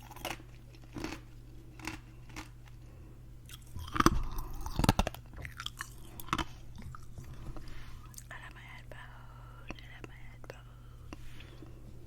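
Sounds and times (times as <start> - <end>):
ice being chewed: 0.0 - 8.4.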